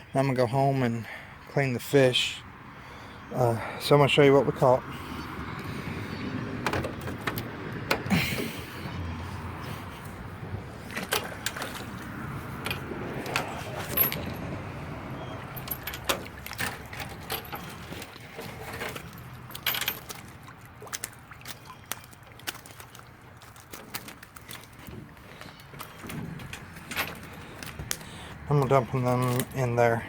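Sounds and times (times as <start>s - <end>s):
metal objects jangling: 15.5s - 17.9s.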